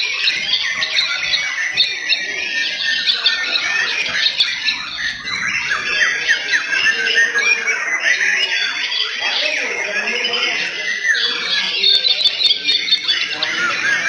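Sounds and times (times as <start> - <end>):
songbirds singing high whistles: 0.0 - 14.0.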